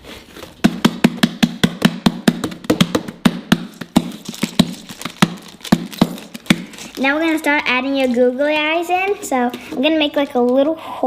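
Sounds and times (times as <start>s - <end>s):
slime clicking and popping: 0.7s - 7.6s.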